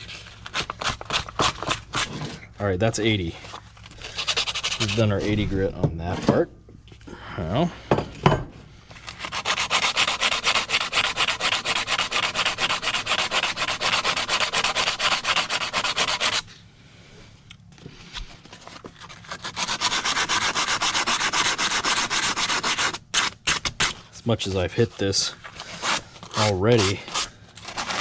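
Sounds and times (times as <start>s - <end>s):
sandpaper rubbing on steel: 4.0s - 5.4s, 9.2s - 16.5s, 19.1s - 28.0s.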